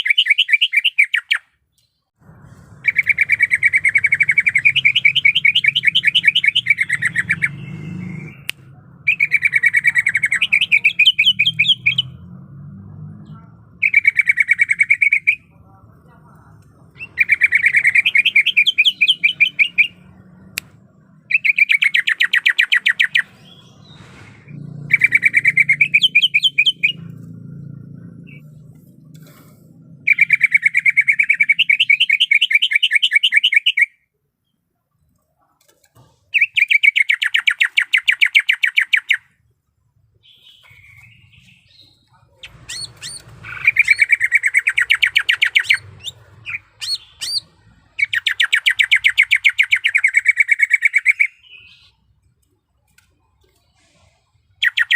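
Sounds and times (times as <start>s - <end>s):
bird calling in rapid trills: 0.0s - 1.5s, 2.8s - 8.3s, 9.0s - 12.2s, 13.8s - 15.5s, 16.9s - 20.0s, 21.2s - 23.8s, 24.8s - 27.2s, 30.0s - 34.0s, 36.3s - 39.4s, 40.2s - 52.0s, 54.6s - 54.9s.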